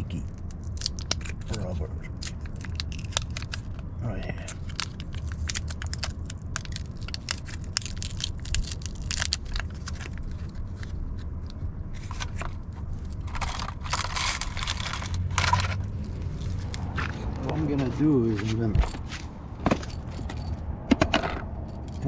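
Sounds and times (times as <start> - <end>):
steady low hum: 0.0 - 22.0
crinkling and clicking of small items: 0.2 - 17.6.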